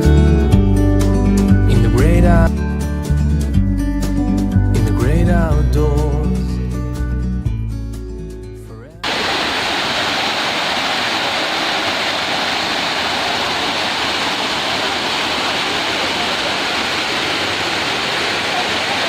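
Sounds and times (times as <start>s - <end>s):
waterfall rushing: 9.0s - 19.0s.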